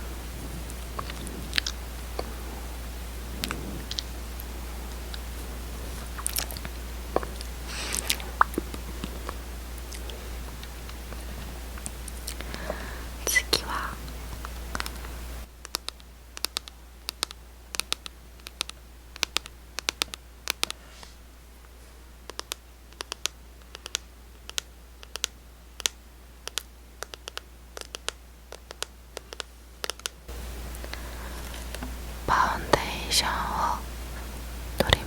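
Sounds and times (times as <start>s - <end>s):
fingernails tapping on packaging: 22.3s - 30.1s.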